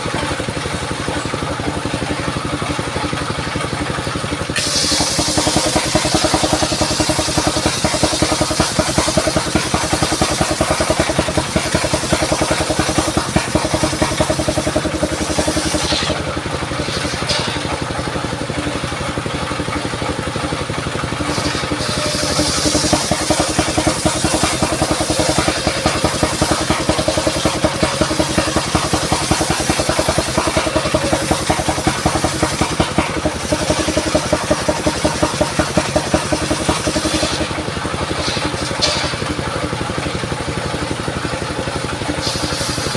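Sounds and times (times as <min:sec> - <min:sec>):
sawmill engine running: 0:00.0 - 0:42.9
saw blade cutting wood hiss: 0:04.5 - 0:17.8, 0:21.3 - 0:37.6, 0:42.2 - 0:42.9.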